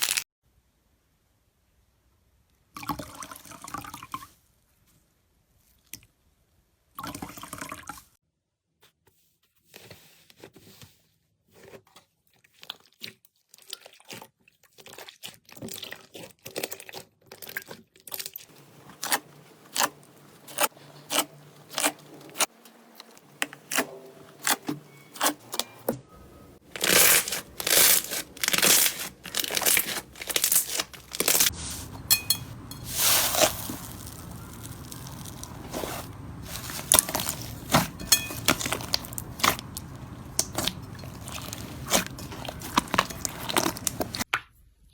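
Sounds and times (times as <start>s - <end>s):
slime crackling and popping clicks: 40.3s - 44.2s.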